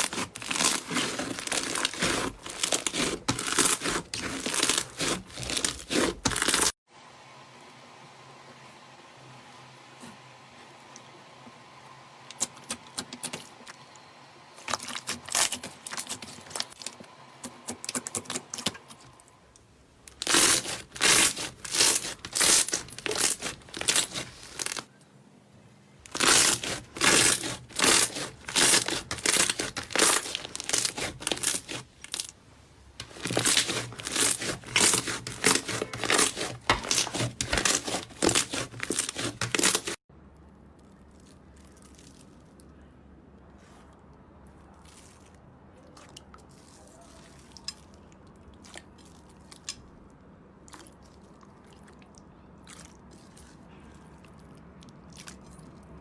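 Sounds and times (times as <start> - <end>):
slime crackling and popping: 0.0 - 6.7, 20.1 - 24.9, 26.1 - 32.3, 33.0 - 40.0.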